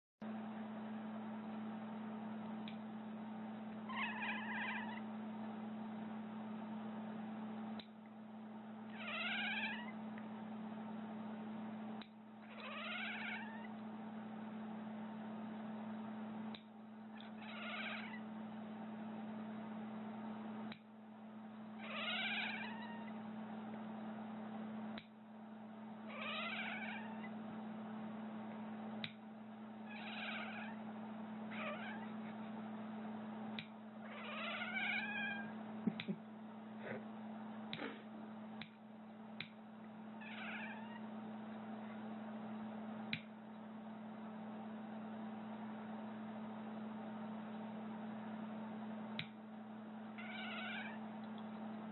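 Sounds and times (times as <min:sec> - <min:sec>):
steady low hum: 0:00.2 - 0:51.9
cat meowing: 0:03.9 - 0:05.0, 0:09.0 - 0:10.0, 0:12.5 - 0:13.7, 0:17.2 - 0:18.2, 0:21.8 - 0:23.2, 0:26.1 - 0:27.3, 0:29.9 - 0:30.8, 0:31.5 - 0:32.2, 0:34.1 - 0:35.5, 0:40.2 - 0:41.0, 0:50.2 - 0:51.0.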